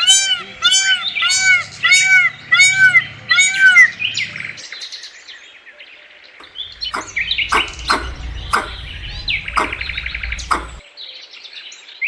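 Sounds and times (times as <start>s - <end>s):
high bird chirps: 0.0s - 4.6s
bird calls: 0.0s - 4.7s, 6.4s - 10.8s
low rumble: 6.4s - 10.8s.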